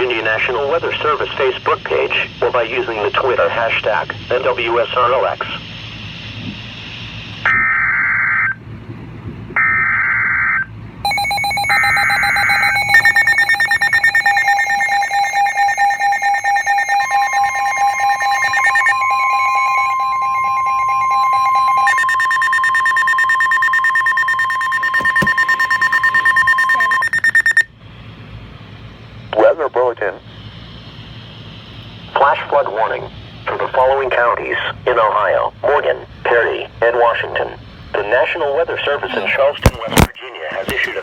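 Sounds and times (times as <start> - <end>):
steady electronic alert tone: 11.0 - 27.7
digital data bursts: 11.1 - 27.7.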